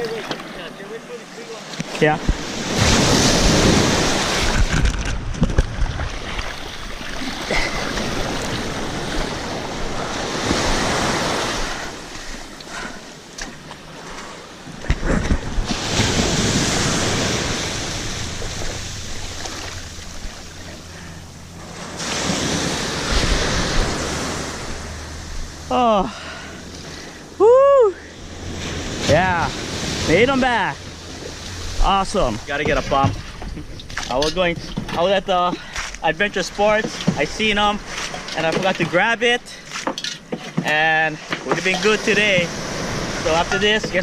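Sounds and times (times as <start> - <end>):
ocean surf breaking: 0.0 - 39.8, 40.7 - 44.0.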